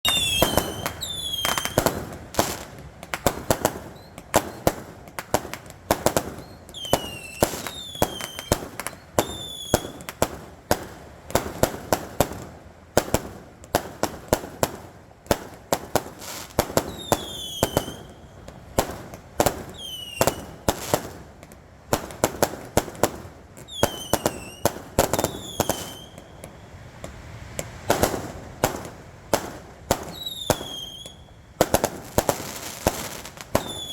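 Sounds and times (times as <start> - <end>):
fireworks bangs and crackles: 0.0 - 33.9
whistling fireworks: 0.0 - 33.9.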